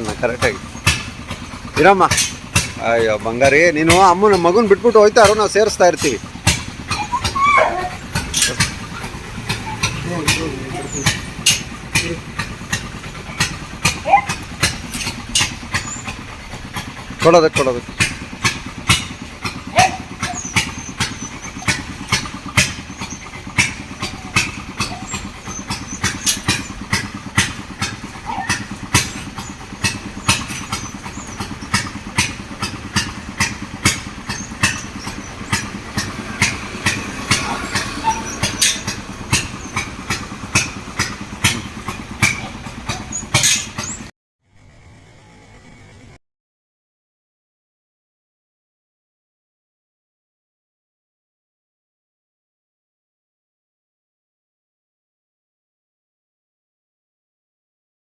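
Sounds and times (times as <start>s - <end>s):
motor running: 0.0s - 44.1s.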